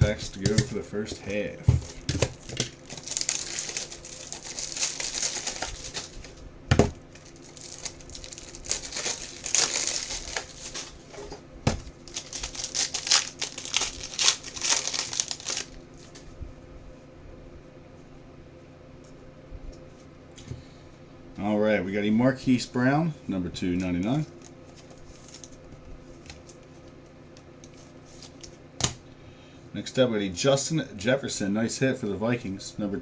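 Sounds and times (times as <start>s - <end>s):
foil wrapper crinkling: 1.8s - 6.4s, 7.0s - 16.2s, 24.0s - 26.9s, 27.7s - 28.6s.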